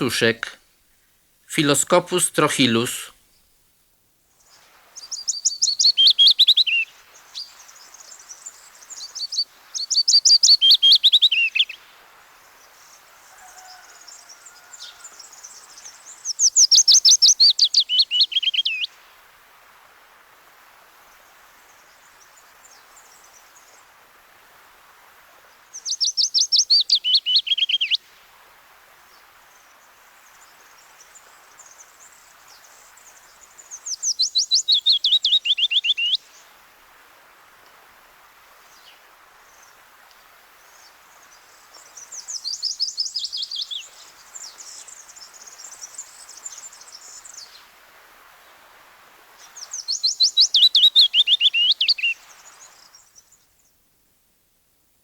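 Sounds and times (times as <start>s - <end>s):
willow warbler singing: 0.0s - 0.5s, 1.5s - 3.0s, 4.4s - 11.8s, 13.7s - 19.0s, 25.6s - 28.0s, 30.0s - 36.5s, 40.6s - 47.8s, 49.4s - 53.3s
faint birds: 0.0s - 54.6s.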